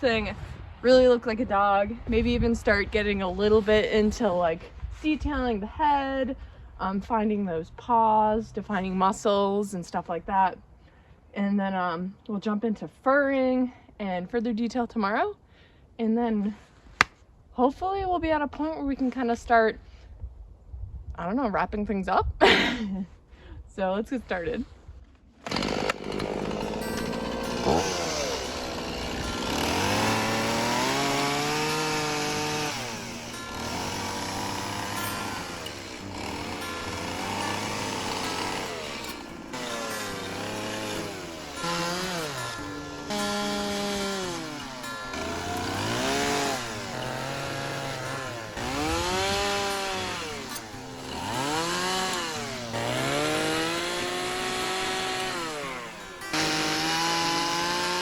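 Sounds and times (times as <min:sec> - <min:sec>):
chainsaw cutting wood: 0:25.4 - 0:58.0.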